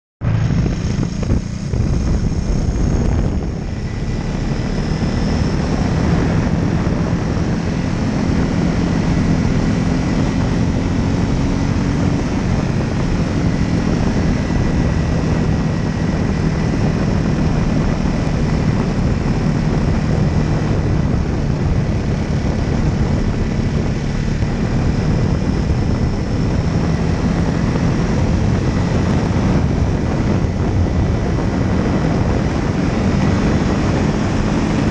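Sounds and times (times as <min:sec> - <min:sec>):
propeller aircraft engine drone: 0:00.2 - 0:34.9
rush of air noise: 0:00.2 - 0:34.9.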